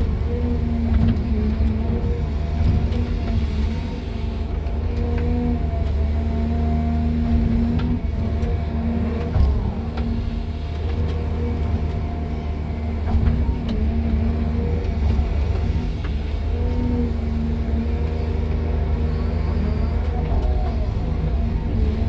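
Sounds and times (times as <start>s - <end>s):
excavator engine and hydraulics: 0.0s - 22.0s.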